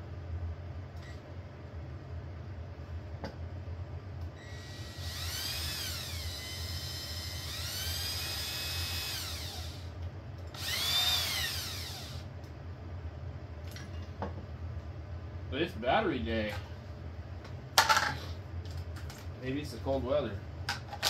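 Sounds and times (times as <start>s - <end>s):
cordless drill whining: 4.4s - 9.9s, 10.6s - 12.3s.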